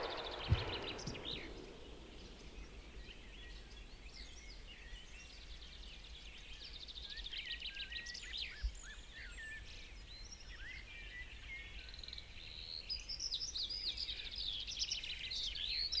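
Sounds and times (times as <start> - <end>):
brief low thump: 0.0 - 1.9
faint low rumble: 0.0 - 4.2
songbirds chirping and trilling: 0.0 - 16.0.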